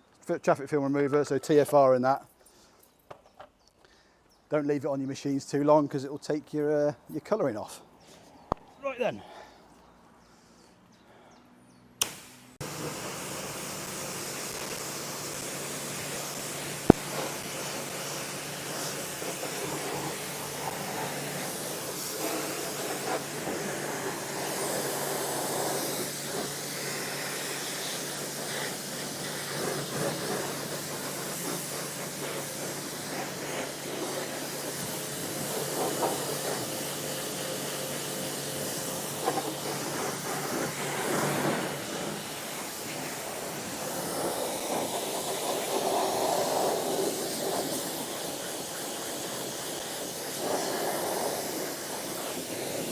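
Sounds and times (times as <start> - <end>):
pressure washer pump hum: 12.0 - 52.9
water jet spraying: 12.0 - 52.9.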